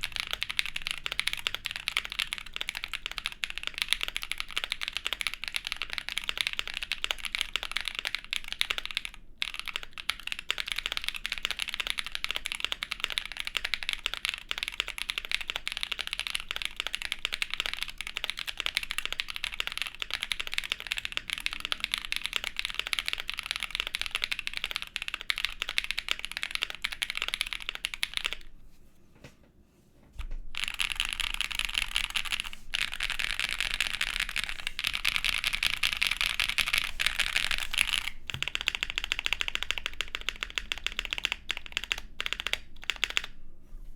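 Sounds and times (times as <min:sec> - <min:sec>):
mechanical keyboard typing: 0:00.0 - 0:28.5, 0:30.2 - 0:43.4.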